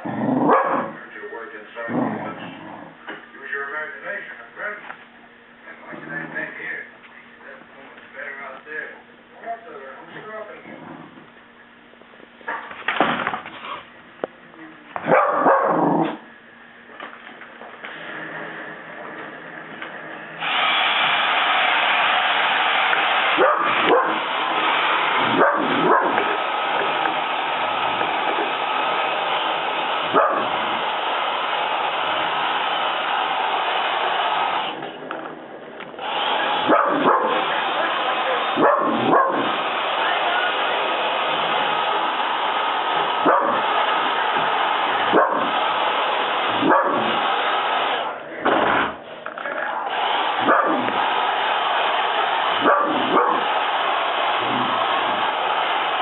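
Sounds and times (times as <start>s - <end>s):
dog barking: 0.5s - 1.0s, 15.0s - 16.2s, 23.4s - 24.3s, 25.3s - 26.4s, 30.1s - 30.6s, 36.6s - 37.4s, 38.6s - 39.5s, 43.2s - 43.7s, 45.1s - 45.5s, 46.6s - 47.2s, 50.4s - 50.9s, 52.6s - 53.4s
vacuum cleaner motor: 17.0s - 56.0s.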